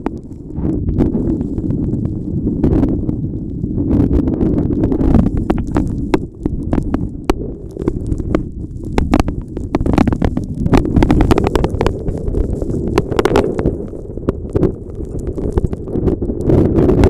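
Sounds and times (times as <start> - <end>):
wind buffeting microphone: 0.0 - 17.0
sharp irregular clicks and taps: 5.0 - 15.9.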